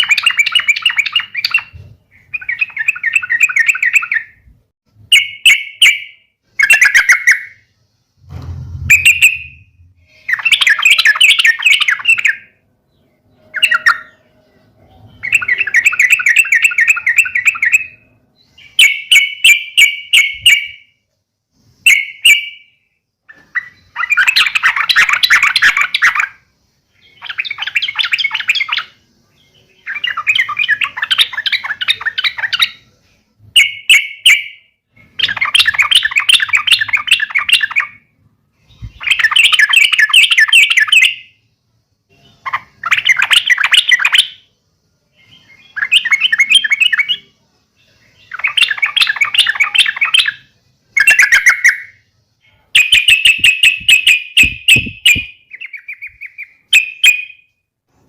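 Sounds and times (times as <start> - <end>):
bird harsh chattering calls: 52.8 - 57.3.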